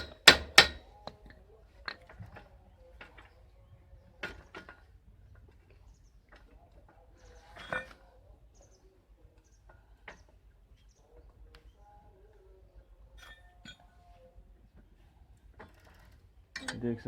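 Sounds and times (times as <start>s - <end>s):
bicycle pedal metal clicks and creaks: 15.4s - 17.0s.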